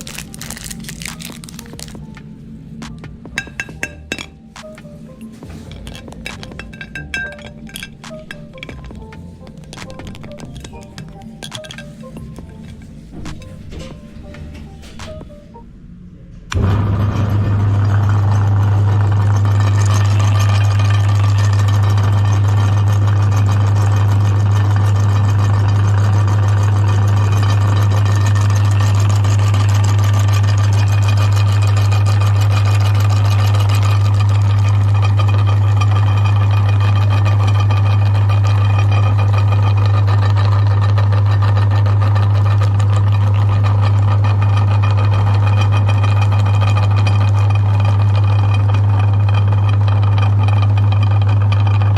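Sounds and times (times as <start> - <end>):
meat grinder motor humming: 16.5 - 51.9.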